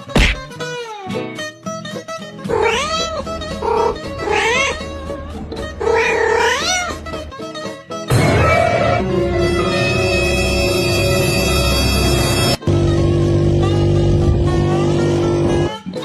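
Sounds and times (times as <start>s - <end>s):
background music: 0.0s - 16.0s
cat meowing and yowling: 2.5s - 5.0s, 5.8s - 7.1s.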